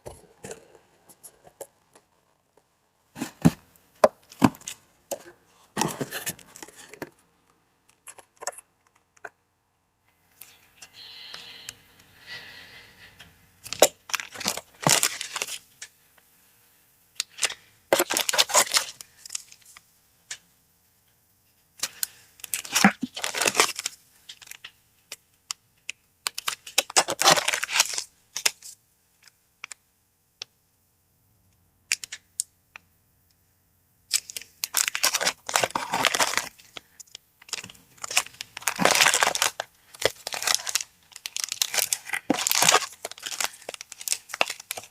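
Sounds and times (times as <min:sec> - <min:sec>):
paper crinkling and tearing: 0:17.3 - 0:19.5, 0:21.8 - 0:24.6, 0:26.3 - 0:28.6, 0:34.1 - 0:36.8, 0:37.4 - 0:44.9.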